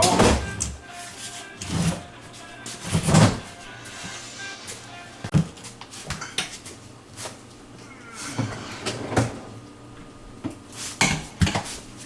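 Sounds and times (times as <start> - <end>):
freezer parts knocking and clattering: 0.0 - 0.8, 1.6 - 3.5, 5.3 - 6.8, 10.4 - 11.8.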